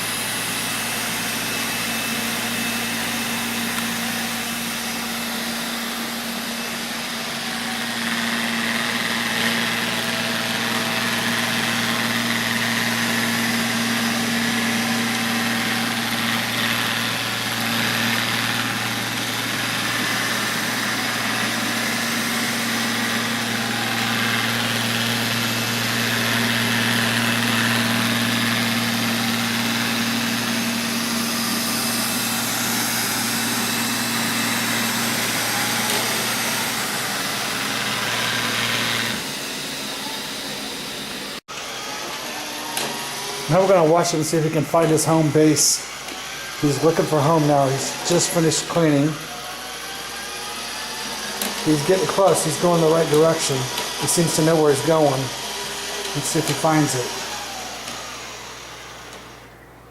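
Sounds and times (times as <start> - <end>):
robot vacuum humming: 0.0 - 59.9.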